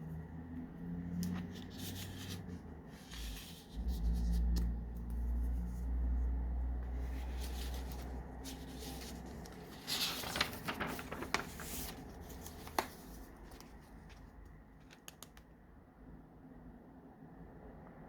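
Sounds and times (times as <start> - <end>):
paper pages rustling: 1.1 - 6.2, 6.8 - 15.6
clicks and taps: 14.9 - 15.5.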